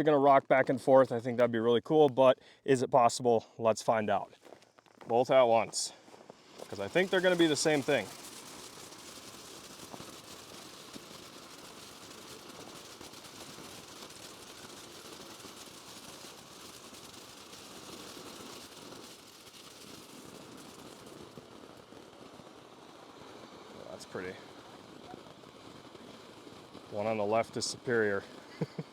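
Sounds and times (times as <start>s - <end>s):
firework fountains hissing: 5.2s - 28.9s
fast crackling: 6.5s - 22.5s, 23.7s - 28.9s.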